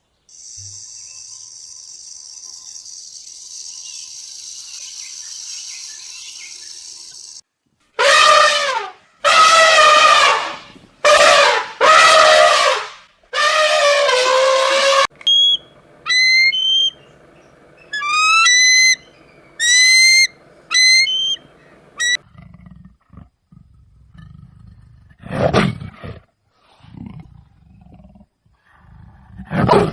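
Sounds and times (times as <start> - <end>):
steady high hiss: 0.0 - 7.4, 15.0 - 22.2
trumpet-like animal calls: 8.0 - 22.2.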